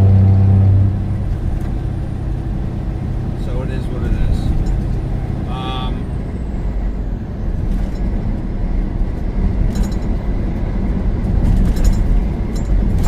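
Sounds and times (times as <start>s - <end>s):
truck engine low rumble: 0.0s - 13.0s.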